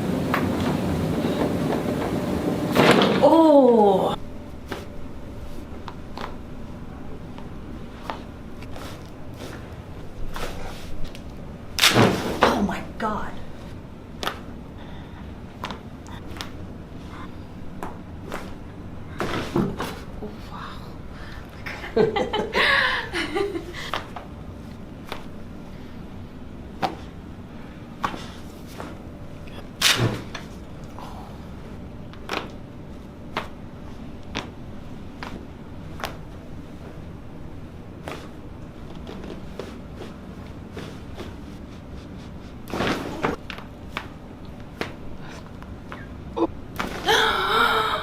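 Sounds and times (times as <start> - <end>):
person exclaiming: 3.2 - 4.2.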